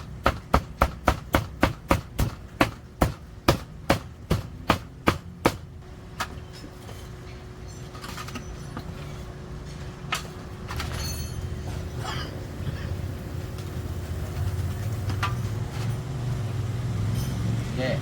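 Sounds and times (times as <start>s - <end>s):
cleaver chopping on block: 0.2s - 5.6s
clinks and rattles: 6.4s - 9.3s, 10.1s - 12.0s.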